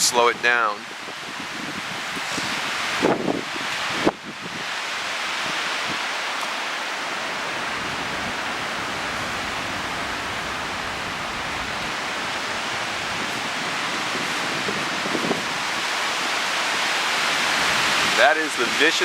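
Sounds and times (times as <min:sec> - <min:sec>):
wind roaring through trees: 0:00.0 - 0:19.0
wind buffeting microphone: 0:00.9 - 0:06.1, 0:07.5 - 0:16.8.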